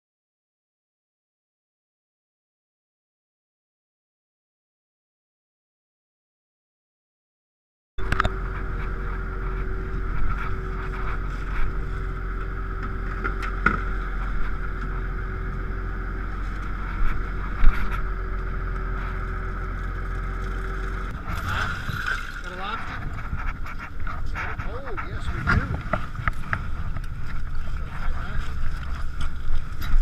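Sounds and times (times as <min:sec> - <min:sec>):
boat engine running: 0:08.0 - 0:30.0.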